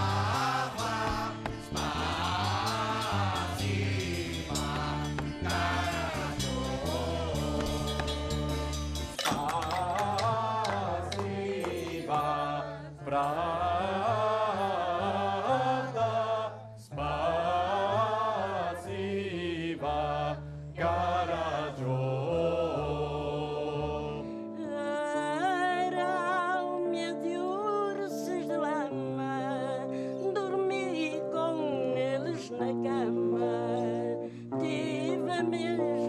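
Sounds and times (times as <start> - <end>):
low instrumental accompaniment: 0.0 - 14.5
choir singing: 0.0 - 24.8, 30.4 - 36.0.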